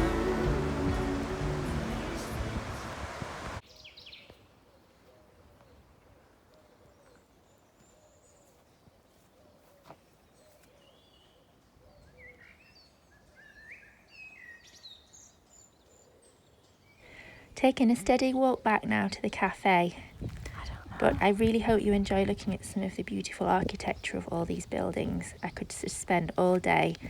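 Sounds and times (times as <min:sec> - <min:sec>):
background music: 0:00.0 - 0:03.6
songbird chirps: 0:00.0 - 0:27.0.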